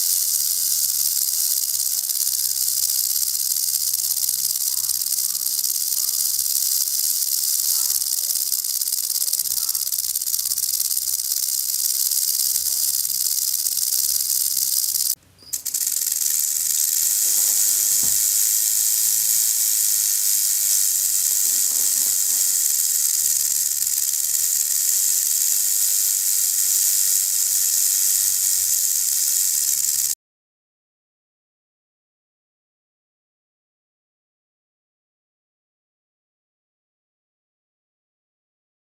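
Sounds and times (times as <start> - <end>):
rattlesnake tail rattling: 0.0 - 30.2.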